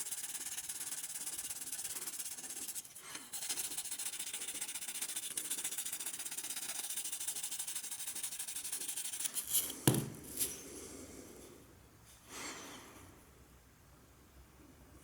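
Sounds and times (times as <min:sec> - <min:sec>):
hand sanding strokes: 0:00.0 - 0:10.5.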